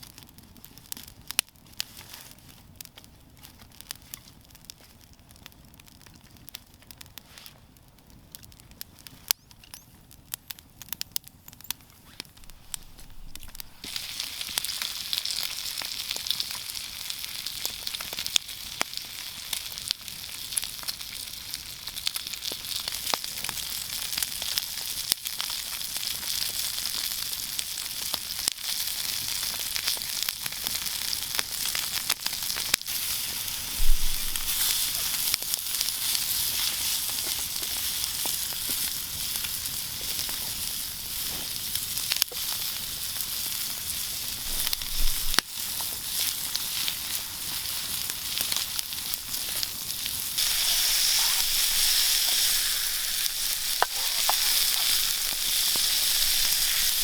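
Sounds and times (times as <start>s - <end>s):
meat sizzling: 12.4s - 57.0s
fat popping: 50.4s - 57.0s.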